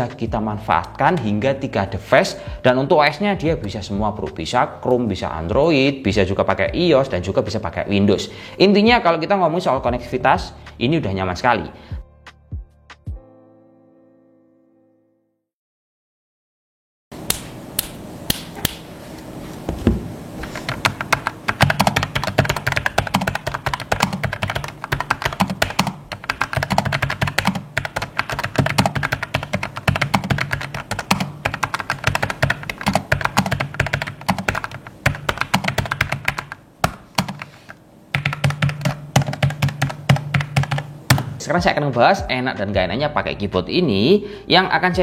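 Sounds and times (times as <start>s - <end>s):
keyboard typing: 20.4s - 41.3s.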